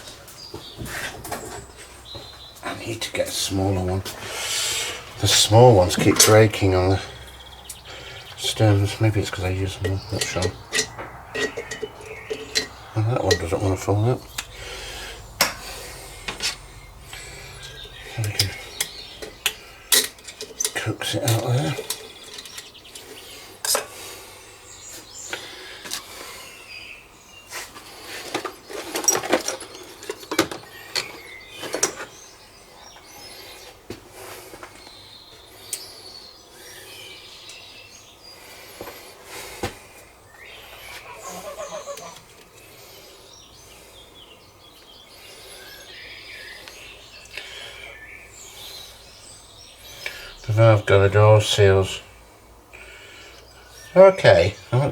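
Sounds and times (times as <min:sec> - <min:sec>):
birds chirping faintly: 0:00.0 - 0:54.9
metal parts clicking and knocking: 0:09.8 - 0:13.6, 0:28.3 - 0:32.1.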